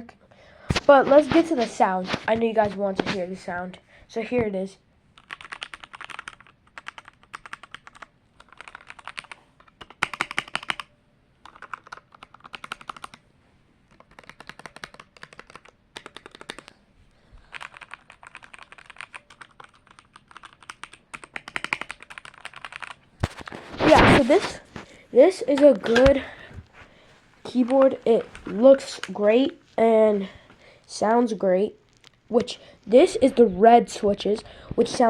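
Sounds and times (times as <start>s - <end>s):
mechanical keyboard clacking: 5.2s - 13.2s, 13.9s - 16.7s, 17.5s - 23.0s.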